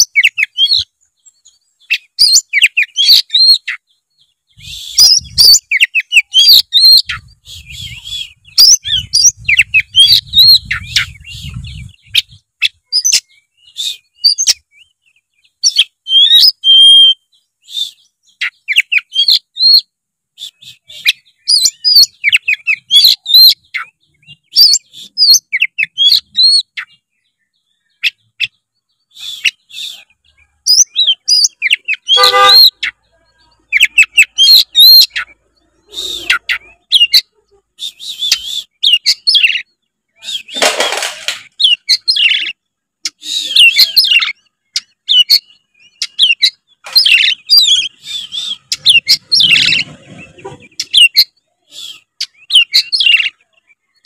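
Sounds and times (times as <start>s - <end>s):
bird singing whistled phrases: 0.0s - 3.8s, 4.5s - 27.0s, 27.9s - 33.0s, 33.7s - 40.6s, 41.6s - 49.9s
harsh rasping bird notes: 29.1s - 42.5s.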